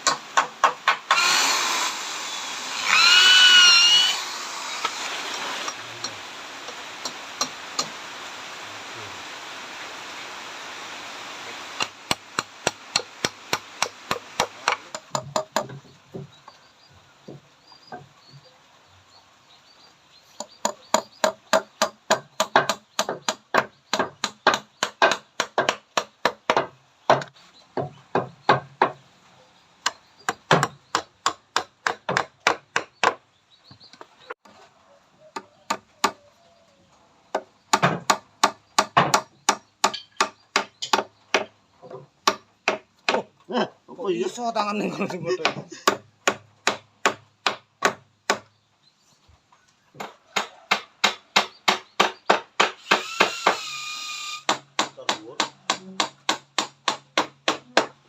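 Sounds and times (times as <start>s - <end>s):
hammering on wood: 0.0s - 1.2s, 11.8s - 16.4s, 20.4s - 29.0s, 29.8s - 33.2s, 35.4s - 36.2s, 37.3s - 43.3s, 45.4s - 48.5s, 50.0s - 53.6s, 54.5s - 58.0s
steady hiss: 0.0s - 15.4s.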